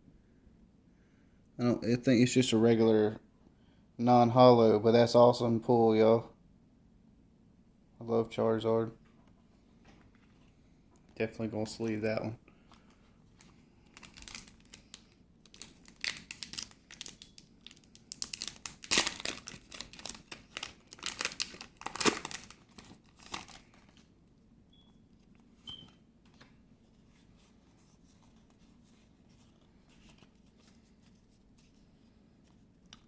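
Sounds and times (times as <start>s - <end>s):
foil wrapper crinkling and tearing: 13.4s - 24.1s.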